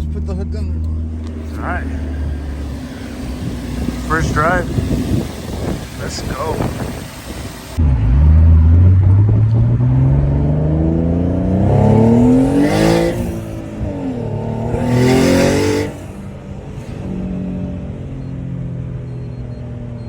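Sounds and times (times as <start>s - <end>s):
car engine accelerating: 0.0s - 20.0s
turbo rush of air: 1.1s - 7.8s, 11.2s - 17.8s.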